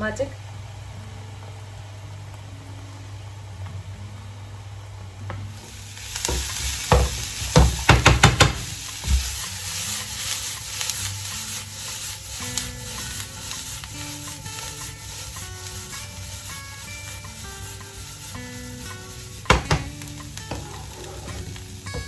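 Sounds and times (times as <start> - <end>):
food sizzling in a pan: 5.3 - 22.0
utensil knocking in a pan: 6.2 - 22.0.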